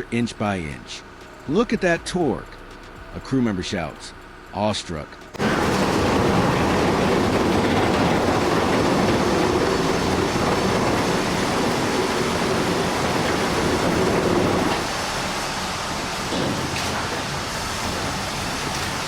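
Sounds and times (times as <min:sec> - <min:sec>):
heavy machinery engines rumbling: 0:05.2 - 0:19.0.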